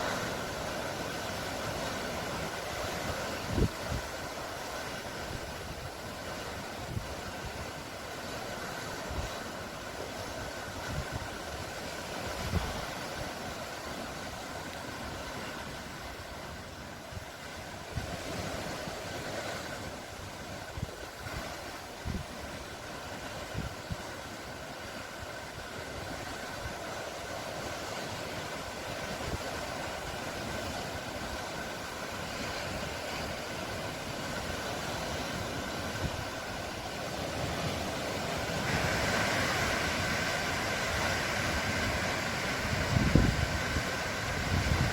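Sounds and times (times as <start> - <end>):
sea waves washing: 0.0 - 44.9.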